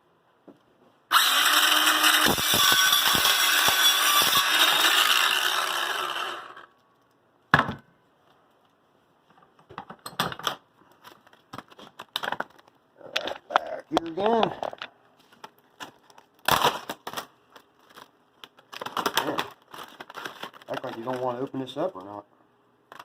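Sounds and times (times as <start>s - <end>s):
electric power tool running: 1.1s - 6.7s.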